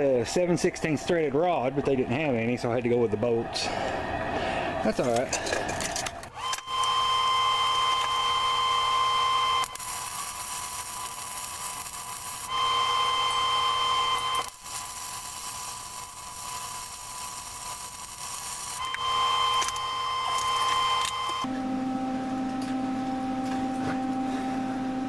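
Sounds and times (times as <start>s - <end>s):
small electric motor whining: 4.9s - 21.5s.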